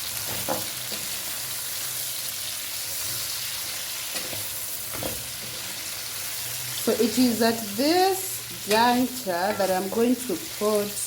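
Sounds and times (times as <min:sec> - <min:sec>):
vegetables sizzling in a pan: 0:00.0 - 0:11.0.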